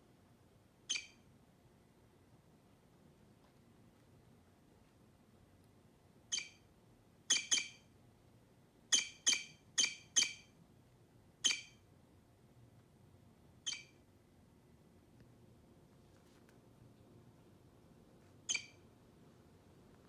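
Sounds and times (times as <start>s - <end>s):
toy mouse squeaks: 0.9s - 1.2s, 6.3s - 6.7s, 7.3s - 7.9s, 8.9s - 10.5s, 11.4s - 11.8s, 13.7s - 14.0s, 18.5s - 18.8s.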